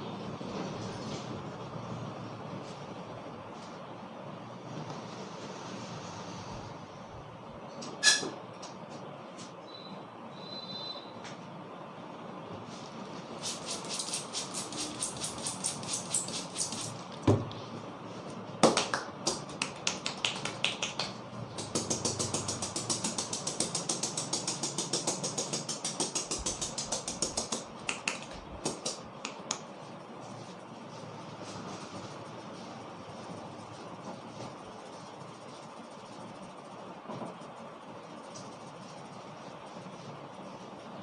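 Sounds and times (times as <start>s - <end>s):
hands slapping on head: 18.6s - 29.7s.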